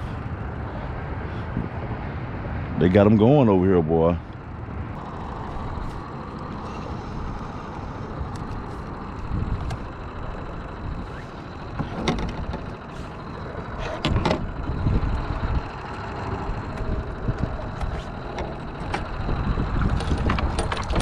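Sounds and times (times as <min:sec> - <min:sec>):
boat engine rumble and hiss: 0:00.0 - 0:21.0
sharp knocks and clicks: 0:11.7 - 0:12.8, 0:13.8 - 0:14.5, 0:16.8 - 0:21.0.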